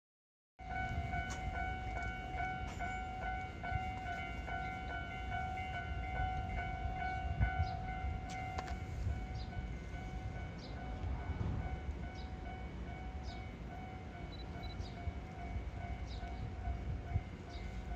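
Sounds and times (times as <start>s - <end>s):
level crossing warning bell: 0.6s - 17.9s.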